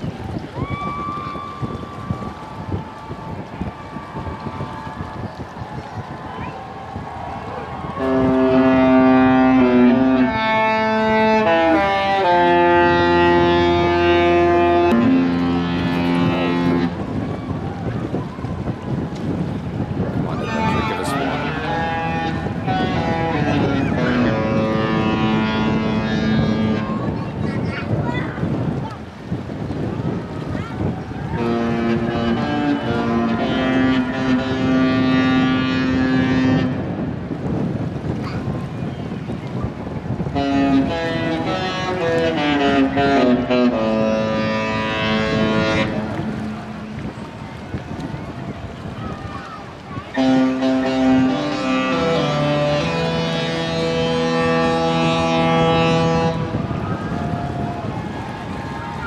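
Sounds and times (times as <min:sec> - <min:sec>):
wind noise on microphone: 0:00.0 - 0:59.0
ship horn playing a tune: 0:06.8 - 0:27.4, 0:28.4 - 0:38.6, 0:39.9 - 0:59.0.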